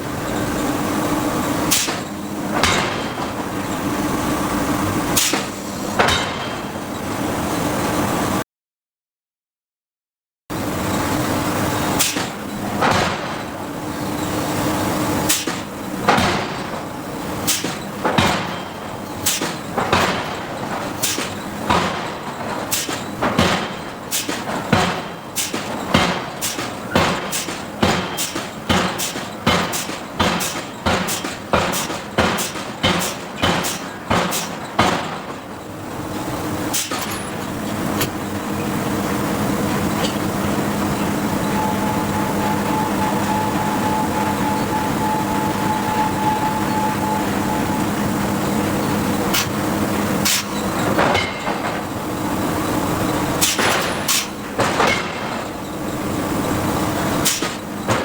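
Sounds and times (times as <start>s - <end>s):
forging hammer striking steel: 1.7s - 3.3s, 5.2s - 6.6s, 17.4s - 35.4s, 50.2s - 51.9s, 53.4s - 55.5s.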